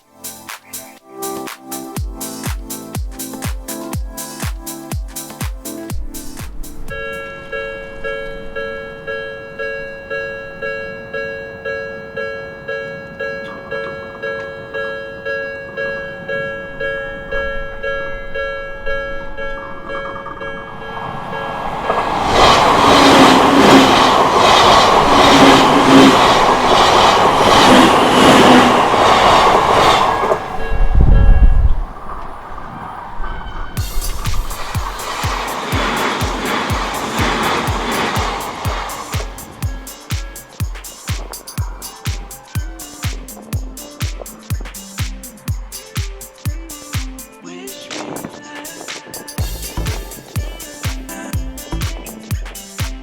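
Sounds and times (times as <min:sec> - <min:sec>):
electric train passing: 0:01.2 - 0:52.8
level crossing warning bell: 0:06.9 - 0:45.8
wheels clacking on rail: 0:19.4 - 0:47.2.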